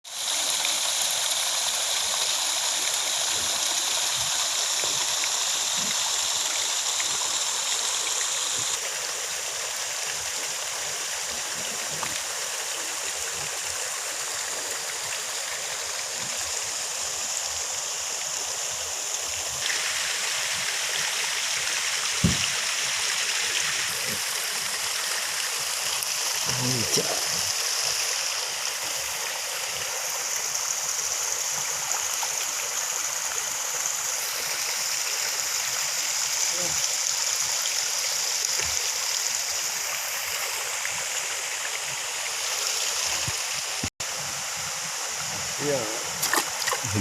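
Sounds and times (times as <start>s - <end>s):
flowing water rushing: 0.0s - 47.0s
short knock: 22.2s - 22.5s.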